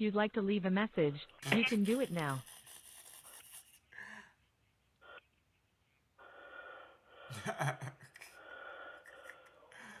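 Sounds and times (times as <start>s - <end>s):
person gasping: 7.2s - 10.0s.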